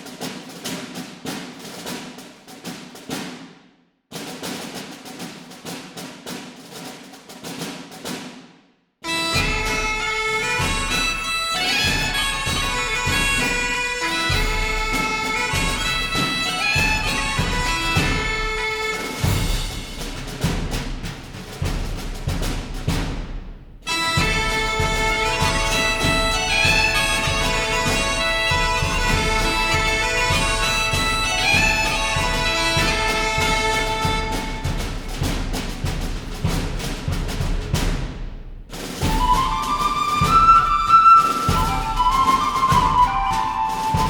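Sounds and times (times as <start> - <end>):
instrumental background music: 23.8 - 34.8, 39.1 - 44.0.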